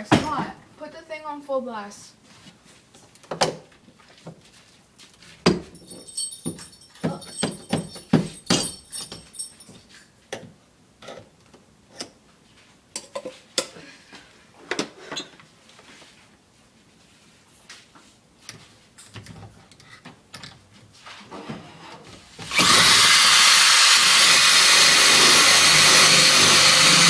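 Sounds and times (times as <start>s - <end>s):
metallic jingling: 5.7s - 9.9s
hand tools knocking on door hardware: 6.4s - 9.3s.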